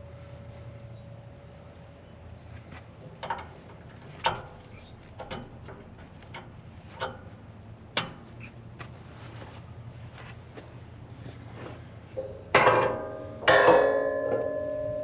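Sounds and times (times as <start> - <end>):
low steady hum: 0.0 - 15.0
clicks and taps of hose couplings: 3.2 - 8.9.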